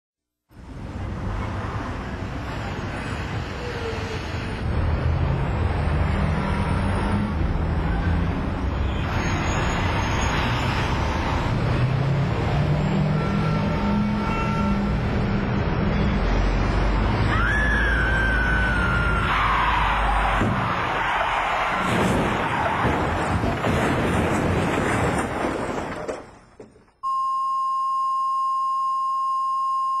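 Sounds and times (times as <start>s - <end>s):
road noise: 0.5s - 27.0s
steady single-pitched beep: 27.0s - 30.0s.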